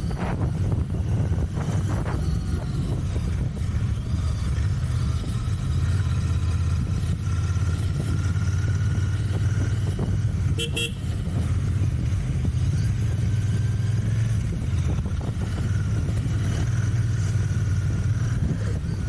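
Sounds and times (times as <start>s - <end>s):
motorcycle engine running: 0.0s - 19.0s
motorcycle horn beep: 10.4s - 11.4s.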